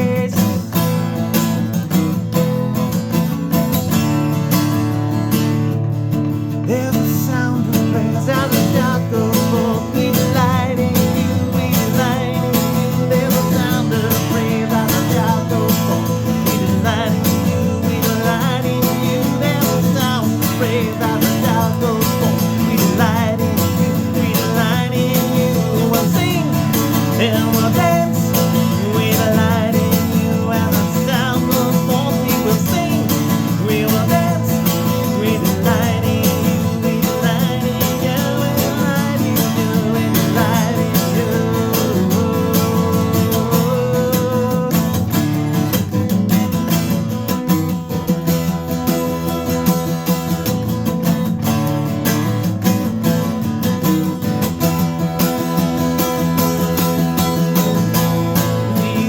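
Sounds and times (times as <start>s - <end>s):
strummed acoustic guitar: 0.0s - 59.0s.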